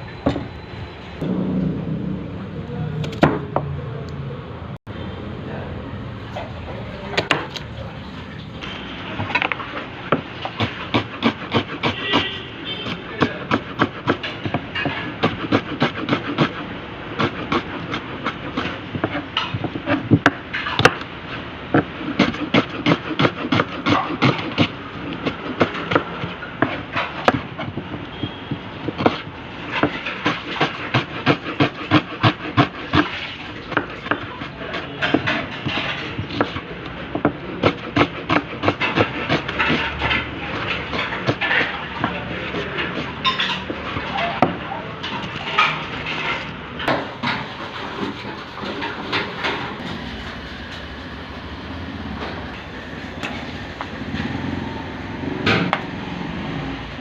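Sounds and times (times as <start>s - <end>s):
rapid kitchen knocking: 9.1s - 21.0s, 21.7s - 45.8s.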